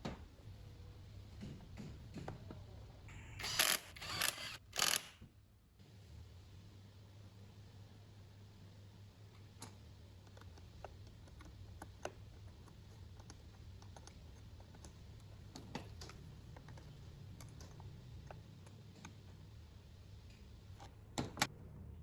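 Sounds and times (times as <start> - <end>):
light clicks and taps: 9.3 - 19.5.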